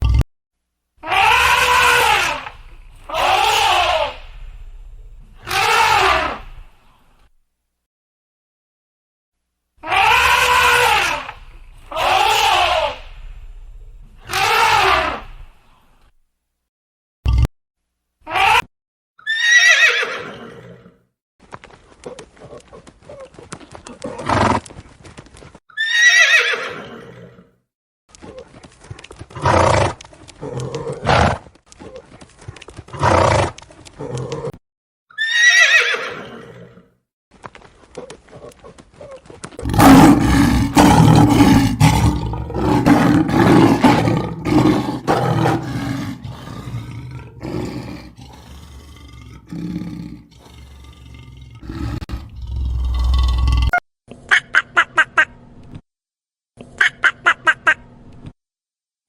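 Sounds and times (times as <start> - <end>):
horse whinnying: 1.0 - 6.6, 9.8 - 13.4, 19.2 - 21.0, 25.7 - 27.5, 35.1 - 36.9
rough low animal calls: 1.0 - 6.9, 9.8 - 16.1, 39.6 - 53.8
horse snorts: 39.6 - 53.8.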